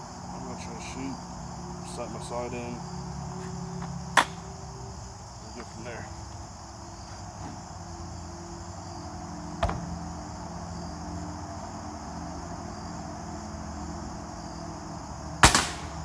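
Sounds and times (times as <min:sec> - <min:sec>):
crickets chirping: 0:00.0 - 0:16.0
gunshot: 0:15.4 - 0:15.9.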